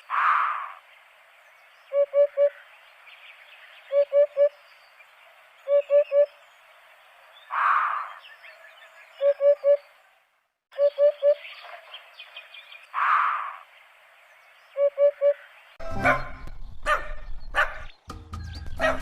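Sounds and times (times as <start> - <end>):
harsh noisy bird call: 0.0 - 0.8, 7.5 - 8.2
bird hooting call: 1.9 - 2.6, 3.9 - 4.6, 5.7 - 6.4, 9.2 - 9.9, 10.8 - 11.6, 14.8 - 15.5.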